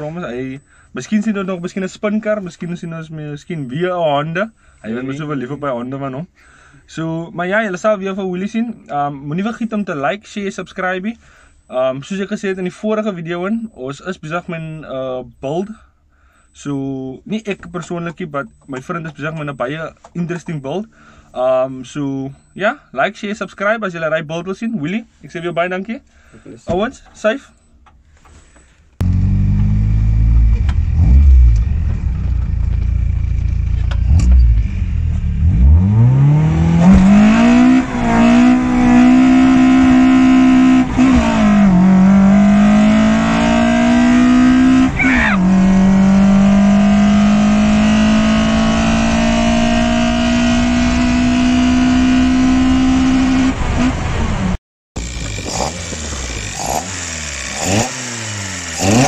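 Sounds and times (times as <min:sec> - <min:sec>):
four-cylinder engine revving: 0:29.0 - 0:59.0.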